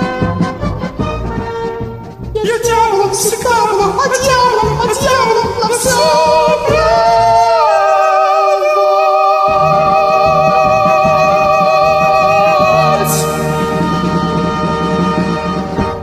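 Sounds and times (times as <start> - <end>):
song backing track: 0.0 - 16.0
woman singing with vibrato: 2.4 - 14.2.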